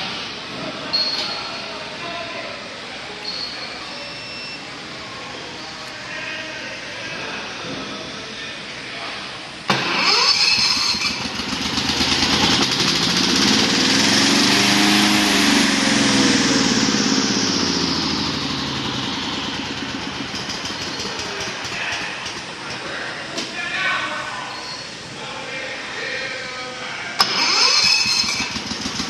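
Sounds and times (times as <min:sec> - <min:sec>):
small engine running: 0:09.7 - 0:22.8, 0:27.2 - 0:29.0.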